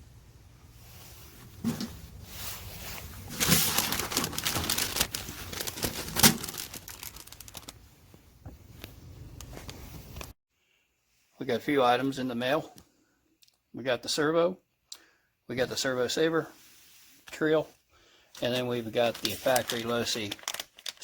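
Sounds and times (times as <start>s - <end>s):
packaging crinkling: 3.1s - 7.9s, 18.9s - 21.0s.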